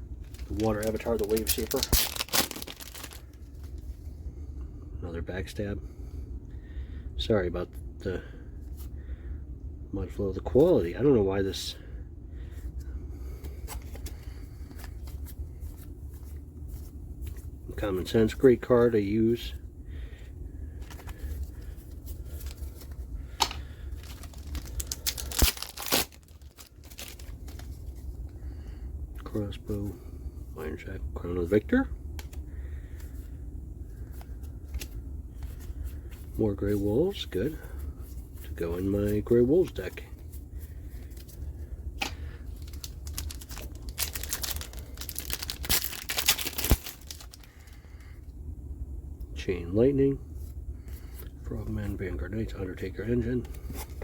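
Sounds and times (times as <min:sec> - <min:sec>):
wrapper tearing and crinkling: 0:00.2 - 0:03.4, 0:22.2 - 0:27.9, 0:42.0 - 0:47.8.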